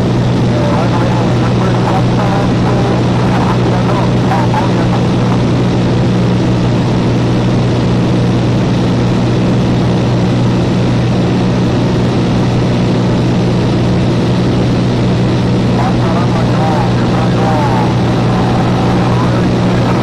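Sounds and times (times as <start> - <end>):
light aircraft engine droning: 0.0 - 20.0.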